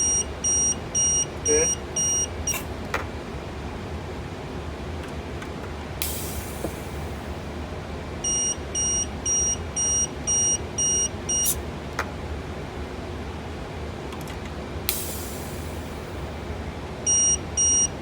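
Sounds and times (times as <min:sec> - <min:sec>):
electronic alarm beeping: 0:00.0 - 0:02.6, 0:08.2 - 0:11.6, 0:17.1 - 0:18.0
steady low hum: 0:00.0 - 0:18.0
compressed air hiss: 0:06.0 - 0:07.3.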